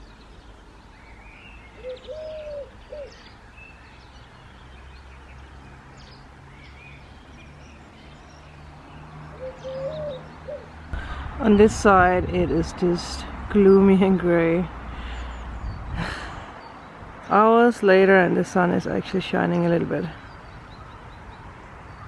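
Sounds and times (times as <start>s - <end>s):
small birds chirping: 0.0s - 22.0s
dove cooing: 1.8s - 3.2s, 9.3s - 10.8s.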